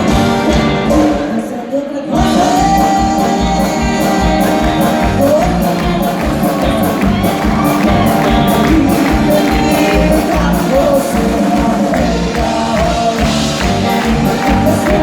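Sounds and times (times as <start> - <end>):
live music with drum beat: 0.0 - 1.5, 2.1 - 15.0.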